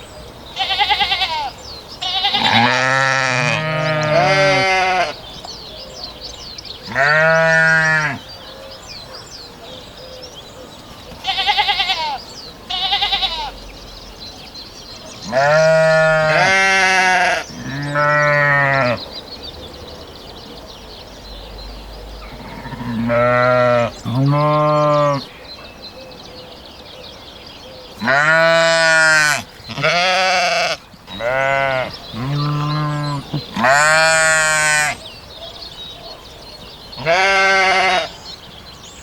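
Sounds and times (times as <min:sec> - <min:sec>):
sheep bleating: 0:00.6 - 0:05.2, 0:06.9 - 0:08.2, 0:11.2 - 0:13.6, 0:15.3 - 0:19.0, 0:22.3 - 0:25.2, 0:28.0 - 0:35.0, 0:37.0 - 0:38.2.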